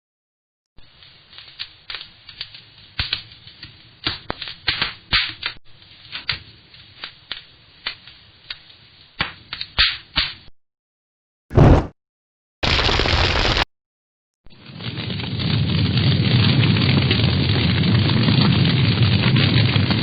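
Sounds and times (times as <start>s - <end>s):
fire crackling: 0.8s - 9.8s, 12.6s - 13.7s, 14.5s - 20.0s.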